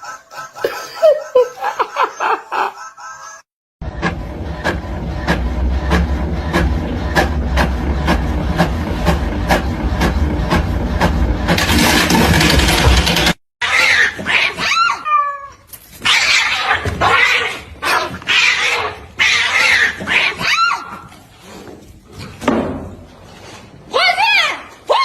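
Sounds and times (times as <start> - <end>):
loud steady sound with clicks: 4.0 - 13.4.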